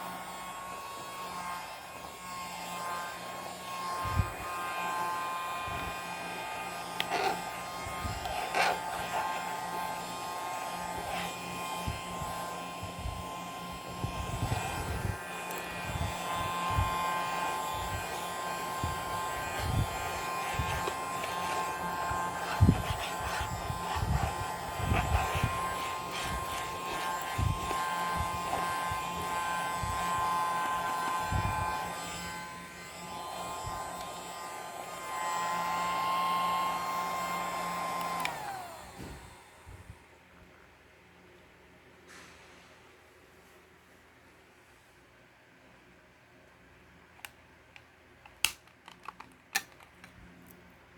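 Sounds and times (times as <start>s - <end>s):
mini vacuum motor whine: 0.0s - 40.1s.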